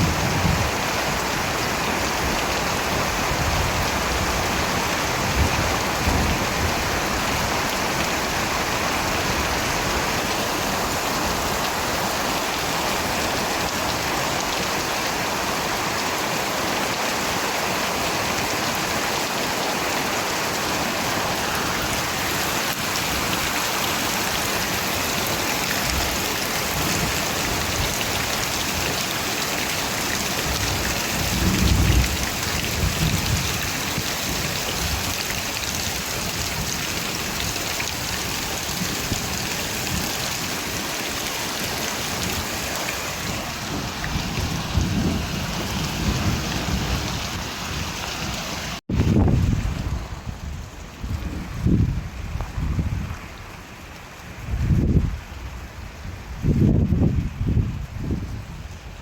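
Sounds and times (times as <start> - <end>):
steady rain: 0.0 - 59.0
low rumble of thunder: 30.4 - 35.0.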